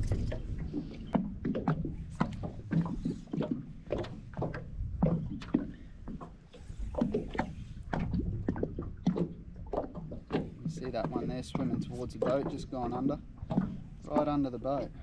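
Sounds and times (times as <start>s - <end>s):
water lapping against boat hull: 0.0s - 15.0s.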